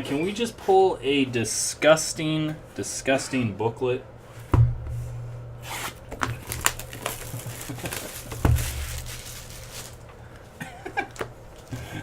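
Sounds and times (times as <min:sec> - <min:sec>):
steady low hum: 0:00.0 - 0:12.0
dull thump: 0:04.5 - 0:05.6, 0:08.3 - 0:09.2
packaging crinkling and tearing: 0:05.8 - 0:10.2.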